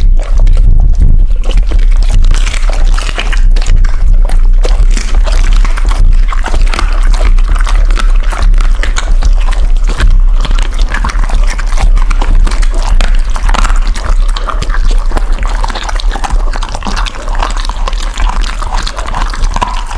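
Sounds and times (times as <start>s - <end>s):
dog crunching bones: 0.0s - 19.9s.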